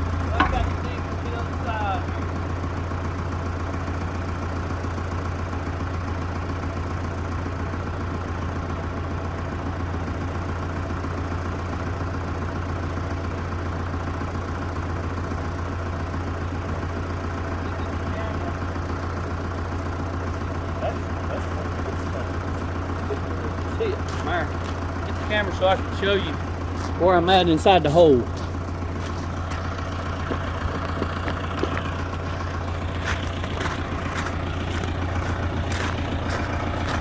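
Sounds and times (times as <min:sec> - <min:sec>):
backhoe engine running: 0:00.0 - 0:37.0.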